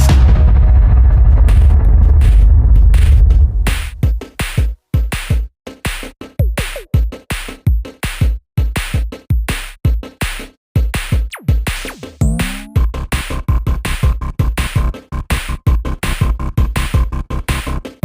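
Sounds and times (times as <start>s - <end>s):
drum machine beat: 1.4s - 18.0s.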